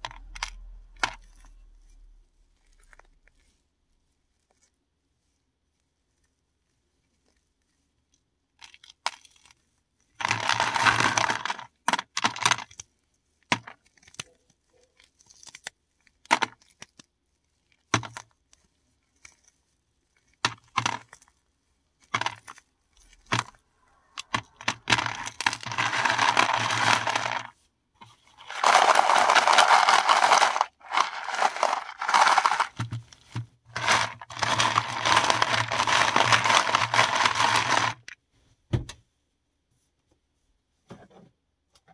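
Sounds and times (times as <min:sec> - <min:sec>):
tablets crunching between hands: 0:10.2 - 0:12.4, 0:24.2 - 0:27.5, 0:28.4 - 0:32.8, 0:33.7 - 0:38.1.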